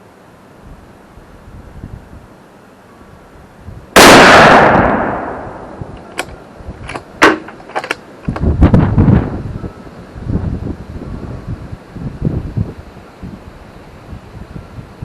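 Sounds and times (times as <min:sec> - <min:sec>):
rifle shot echoing: 0:04.0 - 0:05.8
metallic clicks of rifle handling: 0:06.0 - 0:08.5.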